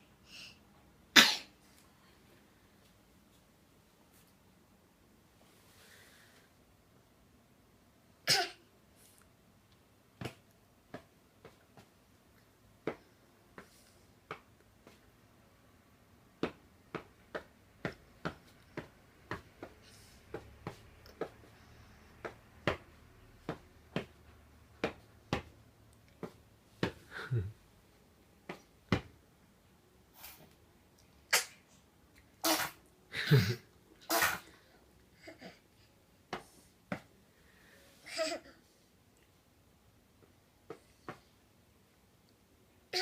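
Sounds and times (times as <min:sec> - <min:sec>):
person sneezing: 0:32.4 - 0:34.6.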